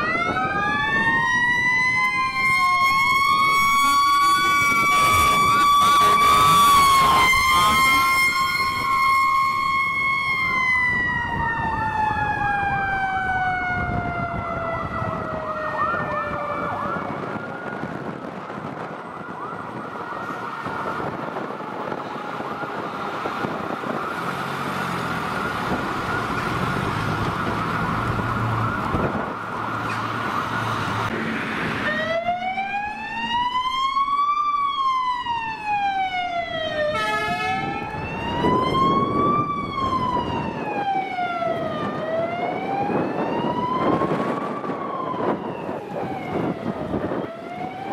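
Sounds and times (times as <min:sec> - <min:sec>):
siren yelp warbling: 0:00.0 - 0:17.9, 0:31.7 - 0:47.9
siren wailing: 0:00.0 - 0:47.9
truck engine rumble: 0:00.0 - 0:47.9.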